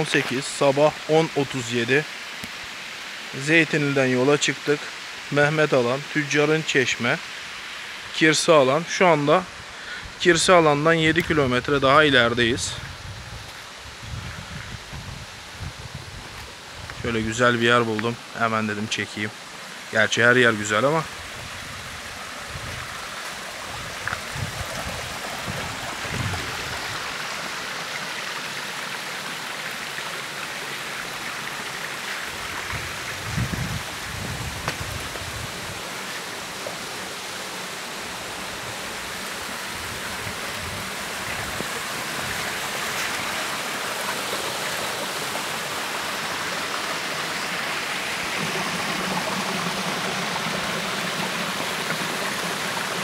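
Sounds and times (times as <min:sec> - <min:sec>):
mountain stream rushing: 0:00.0 - 0:53.0.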